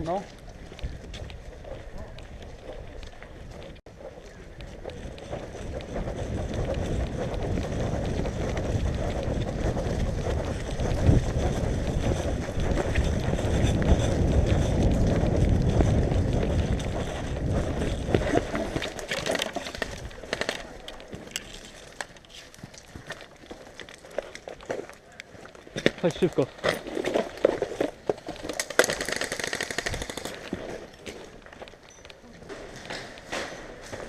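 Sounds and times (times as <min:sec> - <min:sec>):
footsteps and gear knocks: 0:00.0 - 0:29.1, 0:30.0 - 0:34.0
rumbling microphone handling noise: 0:04.5 - 0:21.4.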